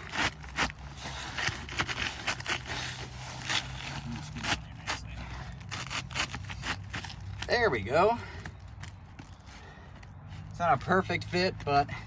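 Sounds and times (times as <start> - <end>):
shingle scraping and crackling: 0.0 - 7.7.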